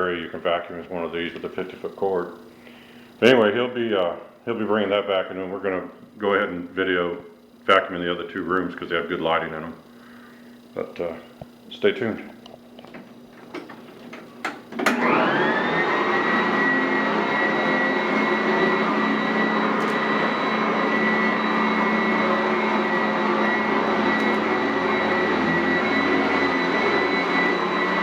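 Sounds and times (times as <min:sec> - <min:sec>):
vacuum cleaner motor whine: 0:06.7 - 0:28.0.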